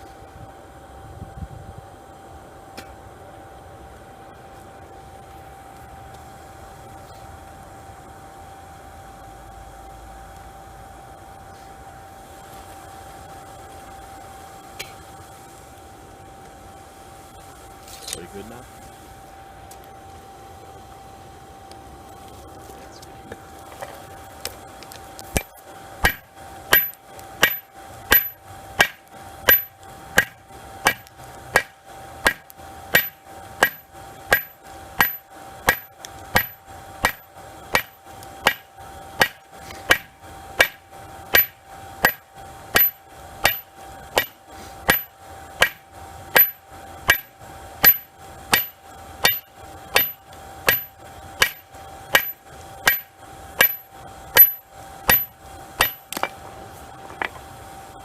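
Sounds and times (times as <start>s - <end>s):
steady hum: 0.0s - 58.0s
hammer striking metal on anvil: 25.4s - 45.8s, 46.4s - 56.3s.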